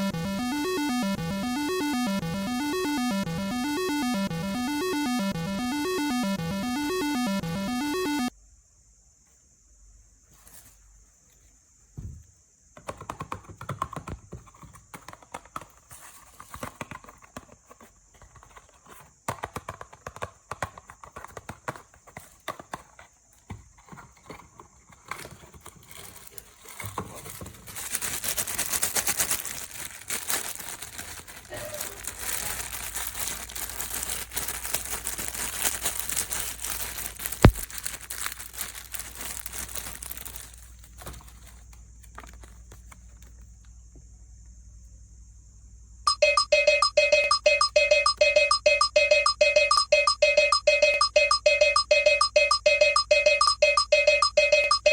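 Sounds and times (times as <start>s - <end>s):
taps and clicks on cardboard: 12.8s - 15.8s, 19.3s - 22.9s
plastic wrapping crinkling and tearing: 25.2s - 43.2s.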